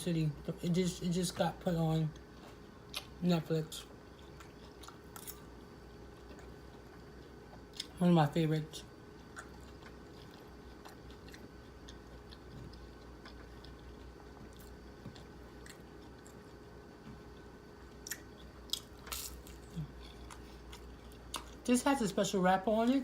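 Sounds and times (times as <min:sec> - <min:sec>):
person chewing crispy food: 0:02.1 - 0:03.2, 0:03.8 - 0:08.0, 0:09.0 - 0:21.7
crunchy bites: 0:17.9 - 0:21.6.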